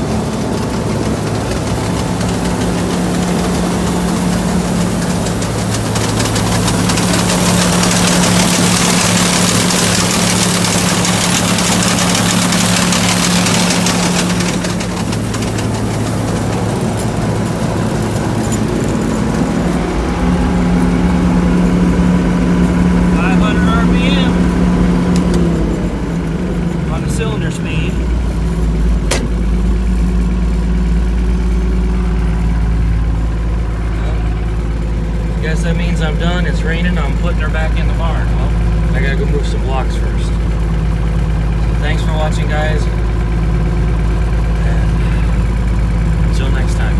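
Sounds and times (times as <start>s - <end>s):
combine engine drone: 0.0s - 46.9s
sharp click: 29.1s - 29.5s.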